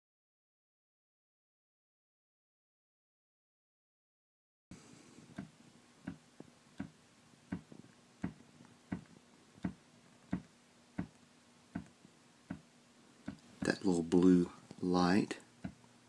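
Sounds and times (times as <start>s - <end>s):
faint steady hum: 4.7s - 16.0s
amplifier speaker ticking pops: 6.8s - 11.9s, 13.2s - 13.8s, 15.6s - 15.8s.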